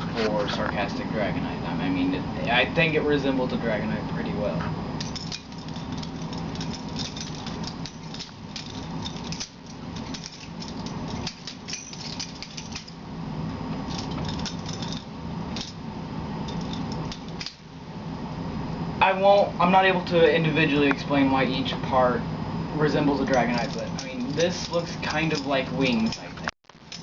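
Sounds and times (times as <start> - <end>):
butterfly knife clicking and rattling: 5.0 - 13.0.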